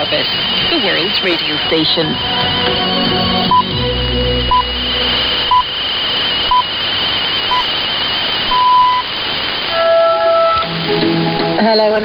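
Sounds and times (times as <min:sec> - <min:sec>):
radio static hiss: 0:00.0 - 0:12.0
time signal pips: 0:03.5 - 0:03.8, 0:04.4 - 0:05.8, 0:06.4 - 0:10.7
high interference whistle: 0:07.4 - 0:07.8, 0:08.5 - 0:09.1.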